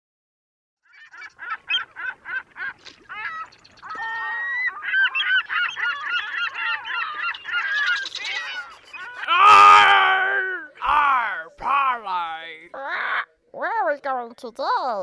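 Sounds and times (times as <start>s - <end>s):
short repeated bird calls: 0.8s - 9.3s
flock of birds calling: 0.8s - 13.8s.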